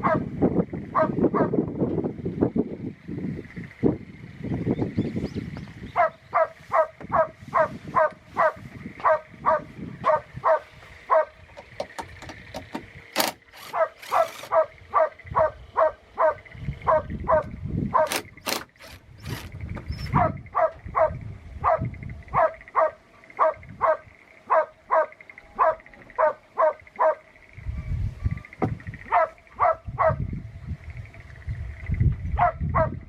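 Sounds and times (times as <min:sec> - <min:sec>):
dog barking: 0:00.0 - 0:00.3, 0:00.9 - 0:01.6, 0:05.9 - 0:11.4, 0:13.6 - 0:18.2, 0:20.0 - 0:28.4, 0:29.0 - 0:30.3, 0:32.4 - 0:33.0.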